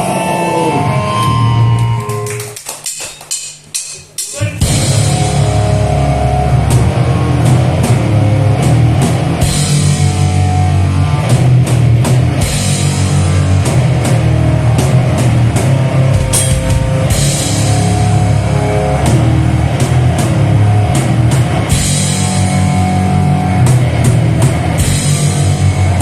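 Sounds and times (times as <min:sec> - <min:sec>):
live rock band: 0:04.4 - 0:26.0
cymbal crashes: 0:15.3 - 0:19.4.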